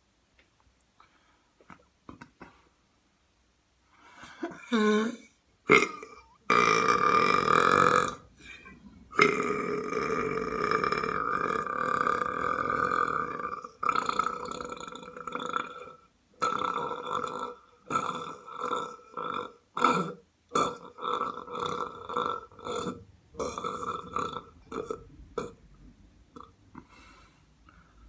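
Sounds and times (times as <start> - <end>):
person belching: 4.4 - 25.6, 26.4 - 26.9.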